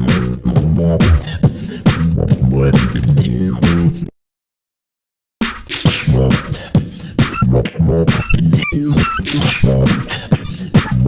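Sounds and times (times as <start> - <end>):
beatboxing bass and kicks: 0.0 - 3.9, 5.4 - 11.0
high squeaky vocal notes: 8.1 - 11.0.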